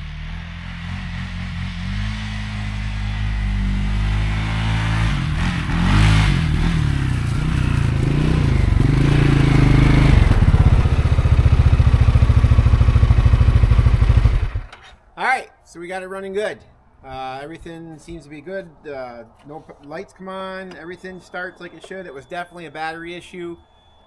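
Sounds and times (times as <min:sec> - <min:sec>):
atv engine running: 0:00.0 - 0:14.9.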